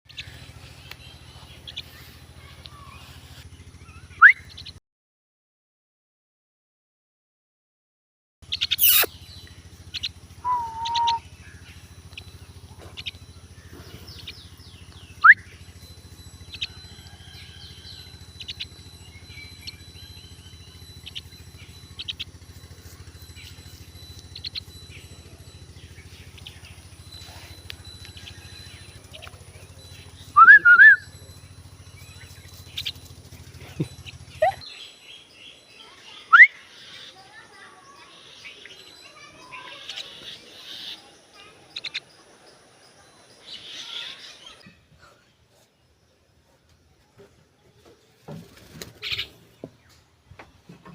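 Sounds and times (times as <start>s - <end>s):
steady low hum: 0.1s - 4.8s, 8.4s - 35.8s
bird chick chirping and squawking: 8.4s - 12.3s, 32.0s - 34.8s, 39.2s - 42.1s, 48.6s - 49.4s.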